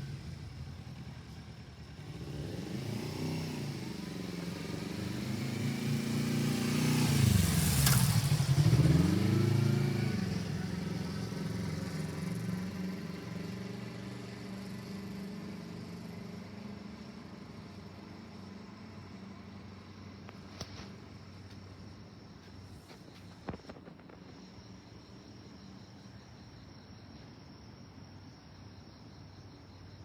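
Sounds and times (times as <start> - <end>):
vehicle engine slowing and pulling away: 0.0 - 21.4
sharp clack: 7.8 - 8.3.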